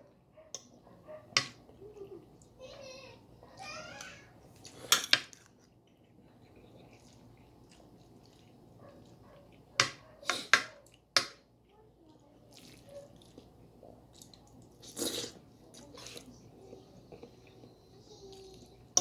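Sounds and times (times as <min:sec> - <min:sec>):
person eating: 0:03.6 - 0:11.1, 0:12.5 - 0:19.0.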